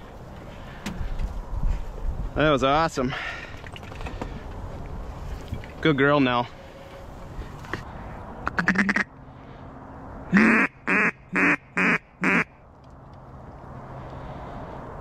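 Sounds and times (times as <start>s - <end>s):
duck quacking: 8.4s - 9.1s, 10.3s - 12.5s.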